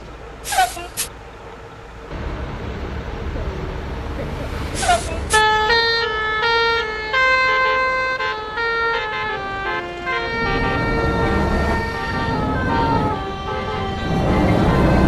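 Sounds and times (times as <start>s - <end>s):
low rumble: 2.0s - 6.3s, 10.1s - 15.0s
multi-tone bus horn tune: 4.8s - 15.0s.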